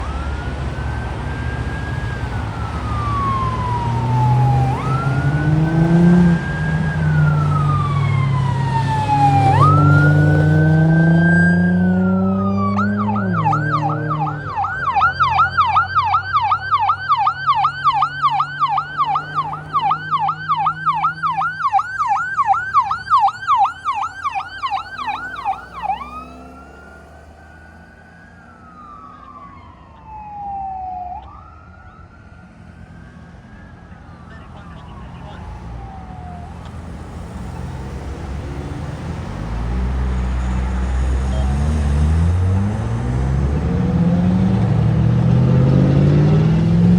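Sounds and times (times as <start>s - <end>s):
ambulance siren wailing and yelping: 0.0s - 44.6s
vehicle engine shifting gear: 4.6s - 20.9s.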